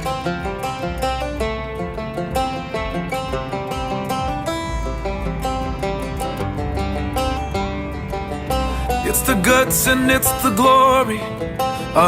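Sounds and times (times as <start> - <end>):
low bass: 0.0 - 12.0
picked string notes: 0.0 - 12.0.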